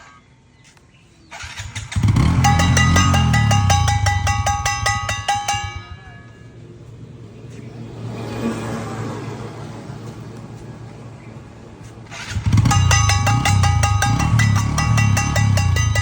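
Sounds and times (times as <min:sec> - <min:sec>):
motorcycle engine revving: 0:01.2 - 0:05.8, 0:11.9 - 0:16.0
fast metallic clatter: 0:01.3 - 0:06.3, 0:12.1 - 0:16.0.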